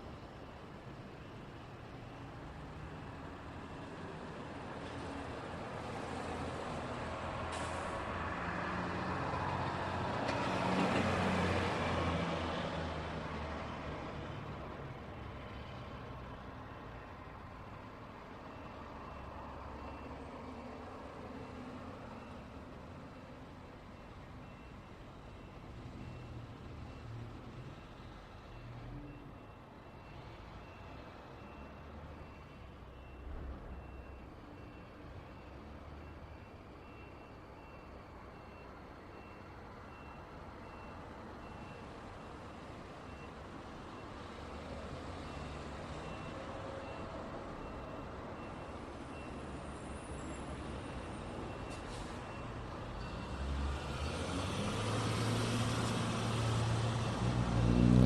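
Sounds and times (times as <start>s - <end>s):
road traffic rumbling: 0.0s - 58.0s
truck reversing alarm beeping: 5.7s - 58.0s.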